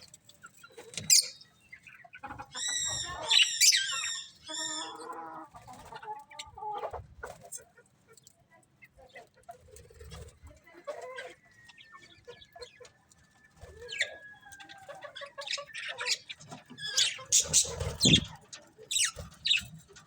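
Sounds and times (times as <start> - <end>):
budgerigars chirping: 0.7 - 5.0, 15.1 - 19.7.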